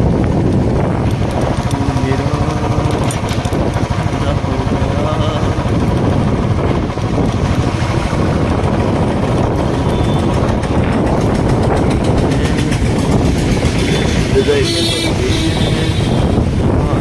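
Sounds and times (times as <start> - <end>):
motorcycle engine running: 0.0 - 17.0
road and wind noise: 0.0 - 17.0.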